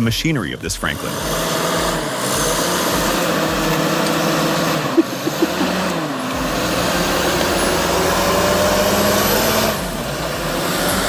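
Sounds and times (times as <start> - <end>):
forestry machine engine running: 0.0 - 11.0.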